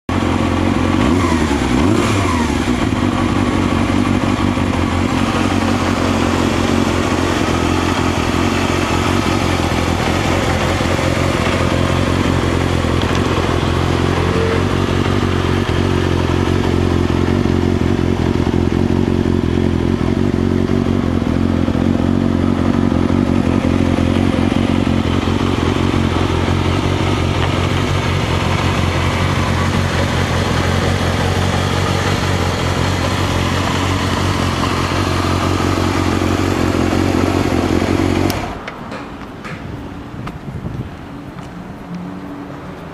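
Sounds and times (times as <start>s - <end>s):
motorcycle engine idling: 0.1s - 40.8s.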